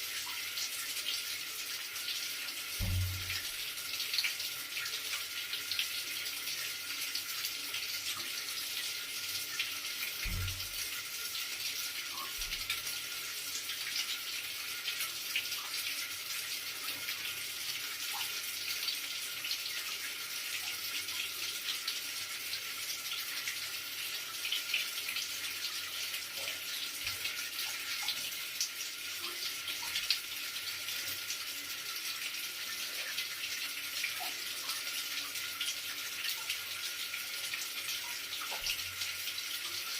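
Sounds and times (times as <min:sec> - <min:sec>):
running water: 0:00.0 - 0:39.9.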